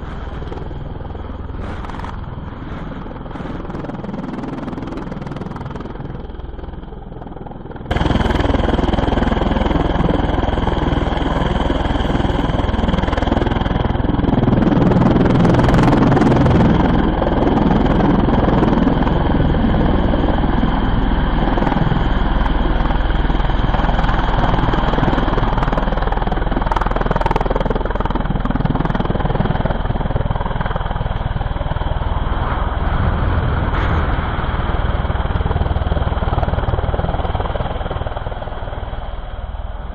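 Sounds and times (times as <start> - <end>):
loud engine running: 0.0 - 6.9, 7.7 - 29.4.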